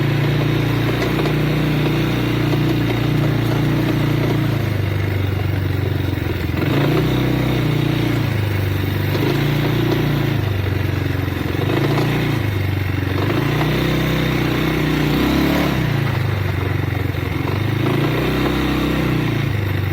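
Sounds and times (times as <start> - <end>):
engine revving: 0.0 - 19.9.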